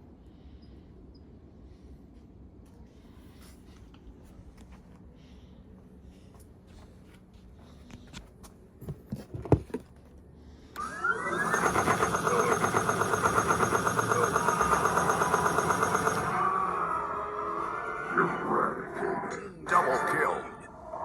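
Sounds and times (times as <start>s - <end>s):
laser tag rifles electronic tone: 11.3s - 16.6s.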